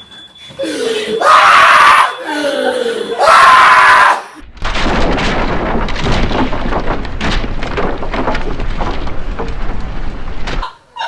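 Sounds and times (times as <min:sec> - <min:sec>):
rapid bangs and crackles: 0:04.5 - 0:10.6.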